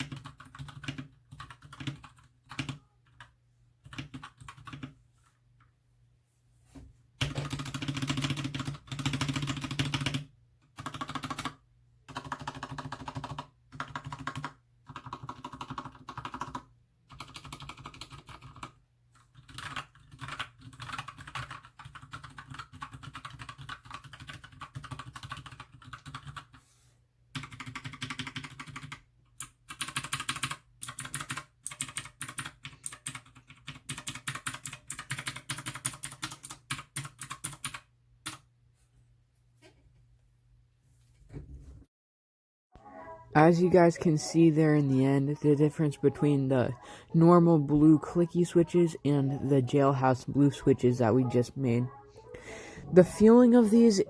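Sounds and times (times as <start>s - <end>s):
mechanical keyboard typing: 0.0s - 5.0s, 7.2s - 26.6s, 27.3s - 38.4s.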